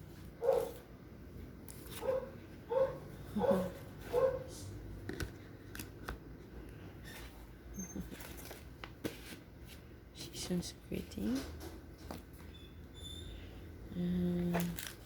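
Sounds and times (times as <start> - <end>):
dog yipping: 0.4 - 0.8, 2.0 - 4.5.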